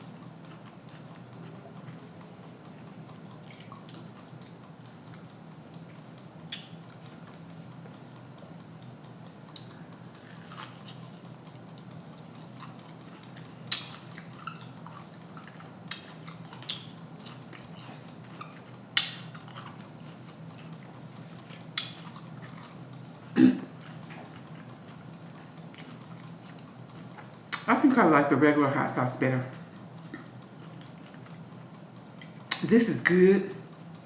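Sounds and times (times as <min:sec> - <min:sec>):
steady low hum: 0:00.0 - 0:34.0
person chewing crunchy food: 0:00.1 - 0:05.3, 0:09.5 - 0:27.7
mouth clicks and smacks: 0:06.4 - 0:06.8, 0:32.2 - 0:32.7.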